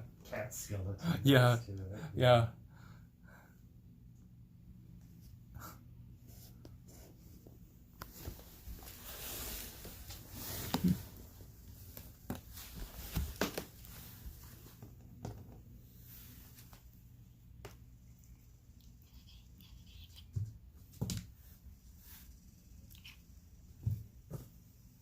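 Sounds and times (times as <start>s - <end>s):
rustling and scraping: 6.2s - 16.9s
cat chewing and crunching: 17.9s - 20.4s, 22.8s - 23.4s.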